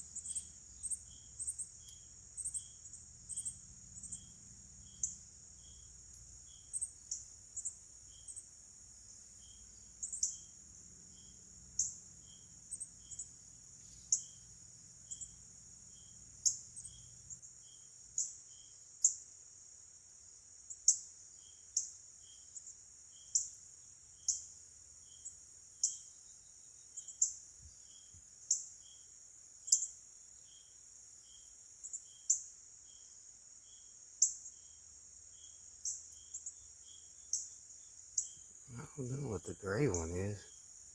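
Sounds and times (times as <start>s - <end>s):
insect sharp loud pulses: 0.0s - 17.8s, 35.3s - 40.9s
insect high buzz: 0.0s - 40.9s
insect high chirp: 0.0s - 40.9s.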